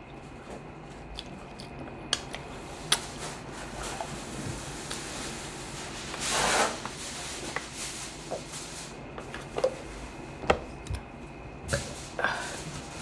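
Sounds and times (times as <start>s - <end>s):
chewing and lip smacking: 1.0s - 3.0s.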